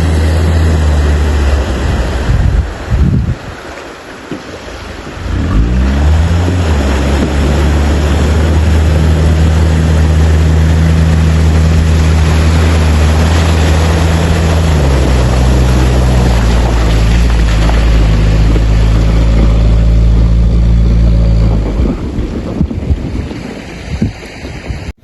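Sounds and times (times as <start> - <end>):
engine revving: 0.0 - 2.2, 5.2 - 22.1
loud rushing noise: 5.2 - 24.4.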